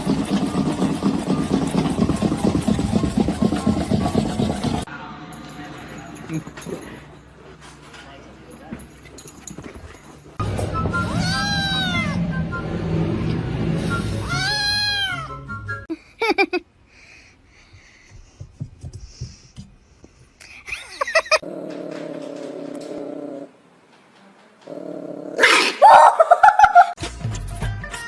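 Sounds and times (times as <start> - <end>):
cat meowing: 11.1 - 12.2, 14.2 - 15.3
cat yowling: 11.1 - 12.2, 14.2 - 15.3.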